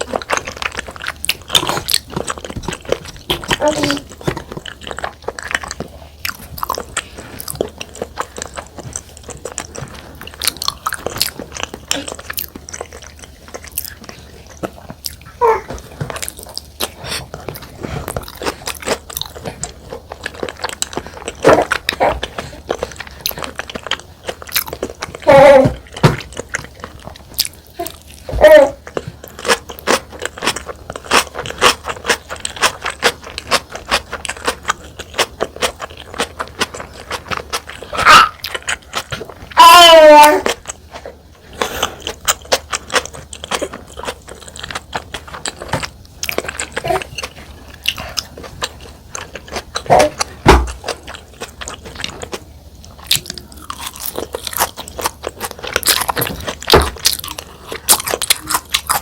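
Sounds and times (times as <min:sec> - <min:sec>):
close chewing and mouth clicks: 0:00.0 - 0:59.0.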